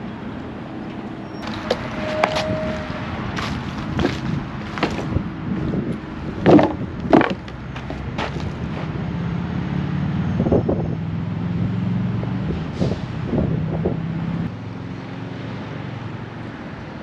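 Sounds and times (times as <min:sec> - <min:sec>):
sharp knocks and clatters: 0:06.4 - 0:08.6.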